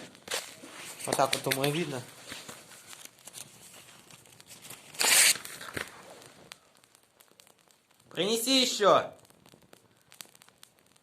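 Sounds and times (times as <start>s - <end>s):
brushwood rustling and tearing: 0.2s - 6.4s.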